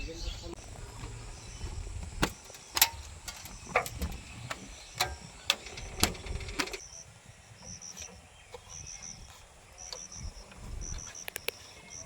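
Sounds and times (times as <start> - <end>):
sharp clicks: 2.2 - 6.8, 11.2 - 11.6.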